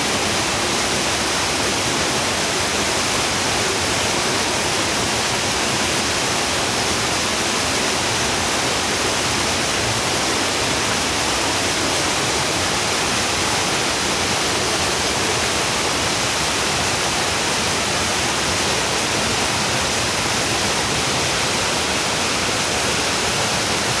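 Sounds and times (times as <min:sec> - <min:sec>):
stream rushing over waterfall: 0:00.0 - 0:24.0.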